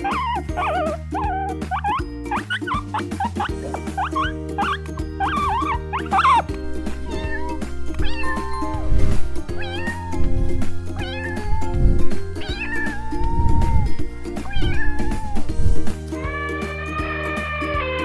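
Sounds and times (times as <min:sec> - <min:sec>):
background music: 0:00.0 - 0:18.0
cat meowing: 0:04.0 - 0:06.5, 0:07.1 - 0:08.9, 0:09.6 - 0:15.6.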